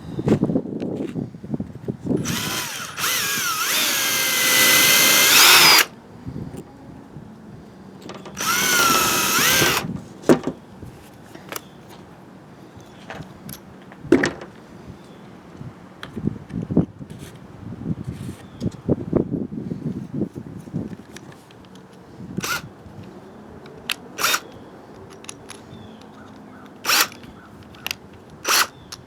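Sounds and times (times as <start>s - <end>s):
electric drill running: 2.2s - 5.9s, 8.4s - 9.9s, 22.4s - 22.7s, 24.2s - 24.5s, 26.9s - 27.2s, 28.5s - 28.7s.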